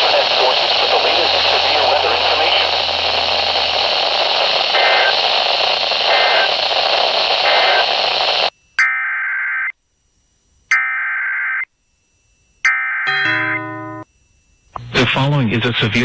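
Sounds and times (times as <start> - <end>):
warbling digital data tones: 0.0 - 8.0
radio static hiss: 0.0 - 8.5
faint data chirps: 0.0 - 8.8.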